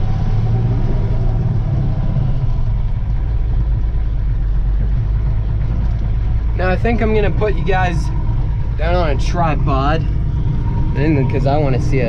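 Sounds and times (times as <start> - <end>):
pickup truck engine running: 0.0 - 12.0.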